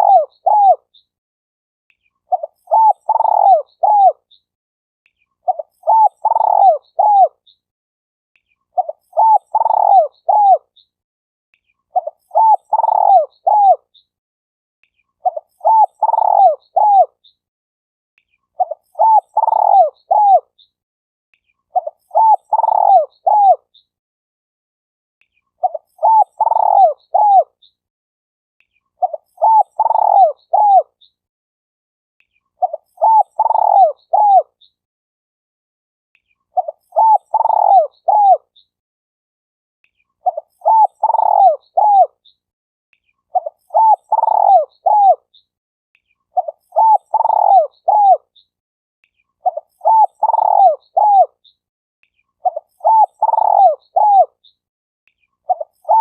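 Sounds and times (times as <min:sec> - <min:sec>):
dove cooing: 0:00.0 - 0:00.8, 0:02.3 - 0:04.2, 0:05.5 - 0:07.4, 0:08.8 - 0:10.7, 0:12.0 - 0:13.8, 0:15.2 - 0:17.1, 0:18.6 - 0:20.5, 0:21.8 - 0:23.6, 0:25.6 - 0:27.5, 0:29.0 - 0:30.9, 0:32.6 - 0:34.5, 0:36.6 - 0:38.4, 0:40.2 - 0:42.1, 0:43.4 - 0:45.2, 0:46.4 - 0:48.2, 0:49.4 - 0:51.4, 0:52.4 - 0:54.3, 0:55.5 - 0:56.0.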